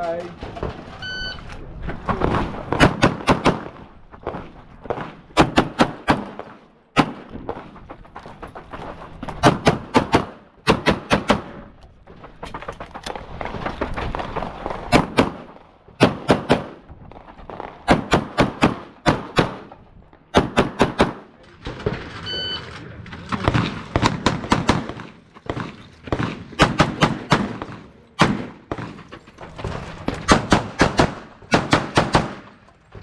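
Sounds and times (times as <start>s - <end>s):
pistol shots: 20.3s - 21.3s, 23.4s - 29.0s, 30.3s - 32.6s.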